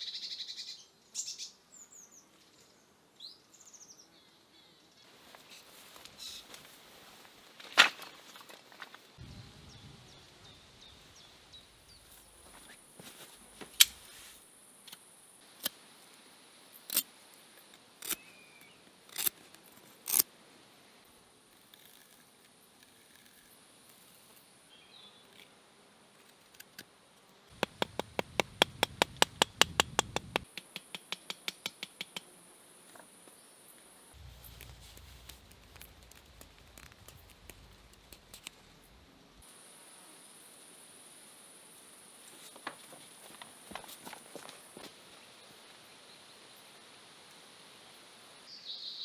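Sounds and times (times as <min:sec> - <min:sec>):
sharp taps: 0:27.6 - 0:32.3
faint high hiss: 0:31.8 - 0:49.0.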